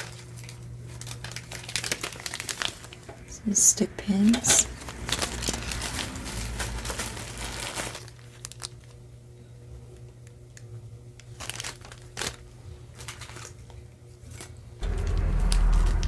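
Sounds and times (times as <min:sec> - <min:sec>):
packaging crinkling: 0:00.0 - 0:03.1, 0:04.6 - 0:09.0, 0:11.2 - 0:15.7.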